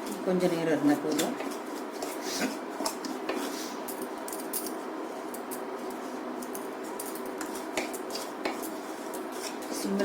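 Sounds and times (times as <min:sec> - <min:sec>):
spoon scraping semolina in pan: 0:01.0 - 0:03.9, 0:05.0 - 0:10.0.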